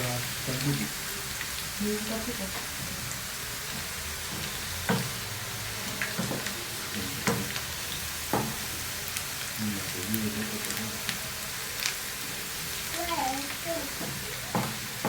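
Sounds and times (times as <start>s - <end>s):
onions sizzling in hot oil: 0.0s - 15.0s
spoon knocking against pan: 4.3s - 5.2s, 6.1s - 6.5s, 8.3s - 8.6s, 13.9s - 15.0s.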